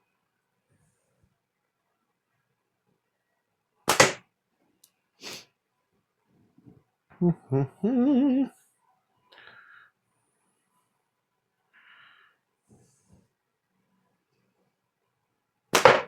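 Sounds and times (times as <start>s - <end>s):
slingshot crack: 3.9s - 4.2s, 15.8s - 16.0s
man's short vocal sounds: 7.1s - 8.6s
man humming: 7.2s - 8.6s.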